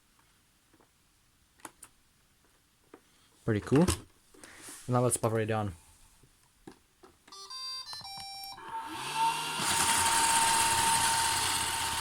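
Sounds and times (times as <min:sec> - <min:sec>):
robot vacuum motors whirring: 0:08.6 - 0:12.0.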